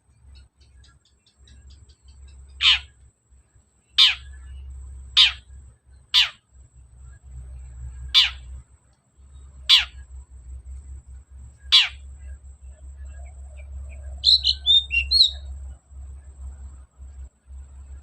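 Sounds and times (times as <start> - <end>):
steady low hum: 0.0 - 18.0
bird harsh scolding calls: 2.5 - 2.9, 4.0 - 4.5, 5.2 - 5.5, 6.1 - 6.4, 8.1 - 8.5, 9.6 - 10.0, 11.6 - 12.1, 14.2 - 15.5.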